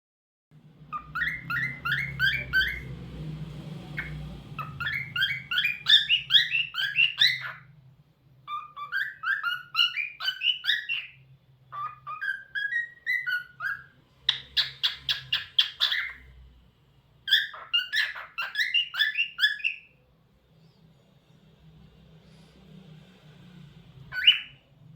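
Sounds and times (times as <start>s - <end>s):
cockatiel chirping and whistling: 0.9s - 2.9s, 4.0s - 7.7s, 8.4s - 16.3s, 17.2s - 20.0s, 24.1s - 24.6s.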